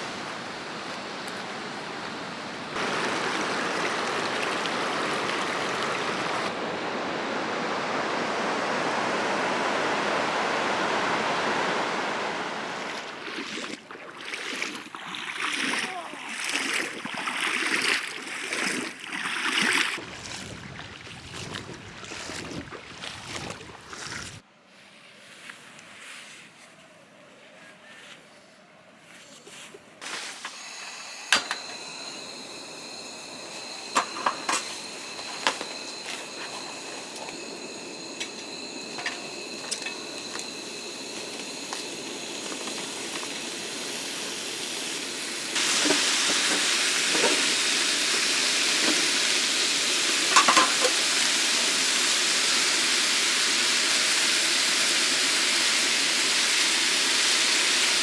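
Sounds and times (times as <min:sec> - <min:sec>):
food sizzling in a pan: 0:30.0 - 0:58.0.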